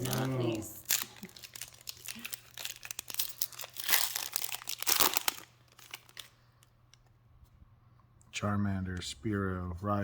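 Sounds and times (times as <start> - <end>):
foil wrapper crinkling: 0.0 - 7.0.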